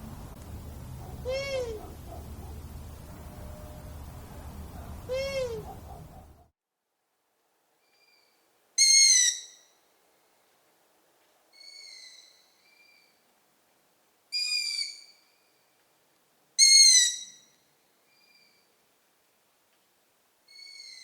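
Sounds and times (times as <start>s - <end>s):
young owls squeaky begging calls: 8.0s - 9.7s, 11.6s - 13.1s, 14.4s - 15.3s, 16.6s - 17.5s, 20.5s - 21.0s.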